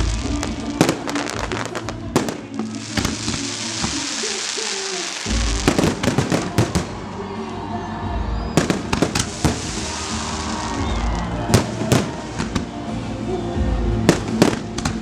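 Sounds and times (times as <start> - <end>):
fireworks bangs and cracks: 0.0 - 13.1, 14.0 - 15.0.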